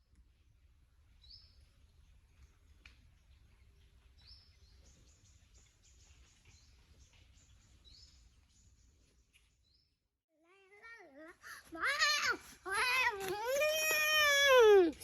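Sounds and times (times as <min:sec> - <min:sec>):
bird chirping: 0:01.1 - 0:10.0.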